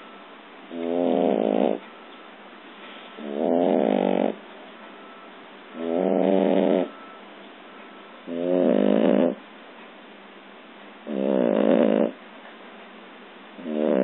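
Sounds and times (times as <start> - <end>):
baby snoring: 0.7 - 1.8, 3.2 - 4.4, 5.8 - 7.0, 8.3 - 9.4, 11.1 - 12.2, 13.6 - 14.0.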